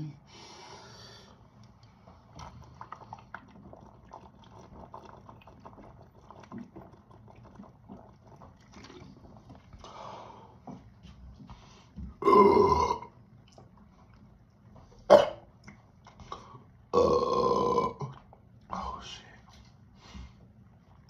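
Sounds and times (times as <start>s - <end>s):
wet crackling of liquid: 1.5s - 9.9s.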